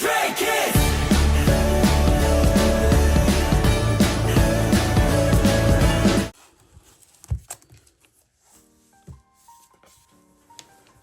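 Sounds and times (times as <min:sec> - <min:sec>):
pop music with beat and bass: 0:00.0 - 0:06.3.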